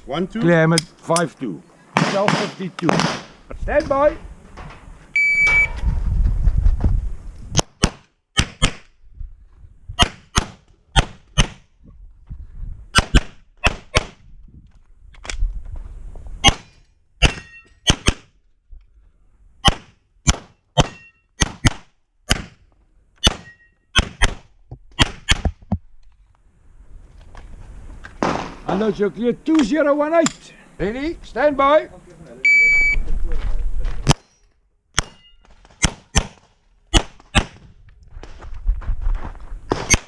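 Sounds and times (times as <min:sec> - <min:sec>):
shot timer beep: 0:05.2 - 0:05.8, 0:32.4 - 0:33.0.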